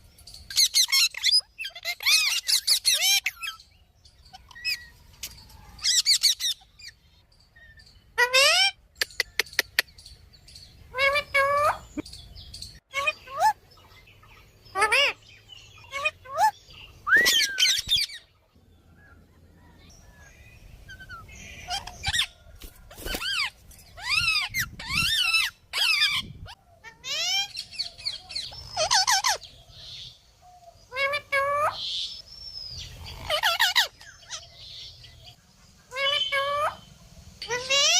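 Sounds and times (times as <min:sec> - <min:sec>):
parrots squawking: 0:00.5 - 0:03.6, 0:05.8 - 0:07.0, 0:08.2 - 0:09.8, 0:10.9 - 0:12.0, 0:12.9 - 0:13.6, 0:14.3 - 0:18.3, 0:20.9 - 0:22.4, 0:23.0 - 0:29.5, 0:30.9 - 0:32.0, 0:33.0 - 0:34.9, 0:35.9 - 0:37.9.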